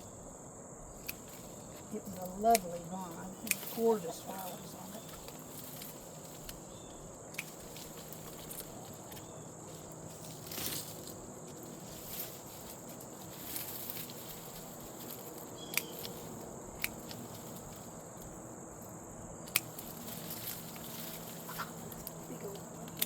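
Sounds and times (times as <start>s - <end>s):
high insect chorus: 0.0s - 23.0s
vines and soil rustling: 0.9s - 23.0s
sharp clicks: 15.7s - 16.2s.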